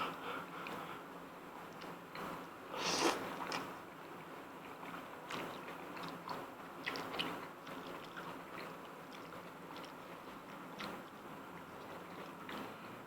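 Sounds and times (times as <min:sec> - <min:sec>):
chewing and mouth sounds: 0:01.7 - 0:03.8, 0:04.6 - 0:12.8.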